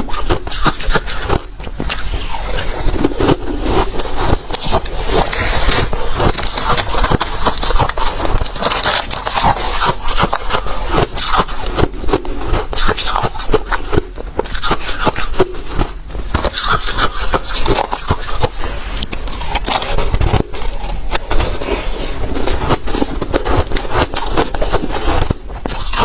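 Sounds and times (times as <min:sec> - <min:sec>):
chewing crushed ice: 0:00.0 - 0:26.0.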